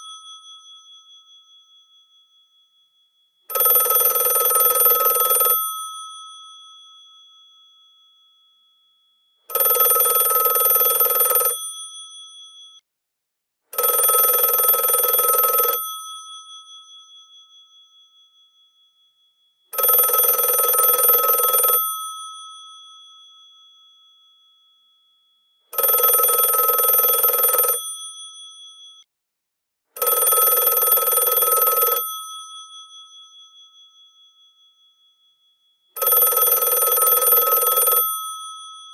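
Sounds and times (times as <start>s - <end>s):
telephone bells ringing: 3.5s - 5.8s, 9.5s - 11.6s, 13.8s - 15.8s, 19.8s - 21.9s, 25.8s - 27.8s, 30.0s - 32.2s, 36.0s - 38.5s.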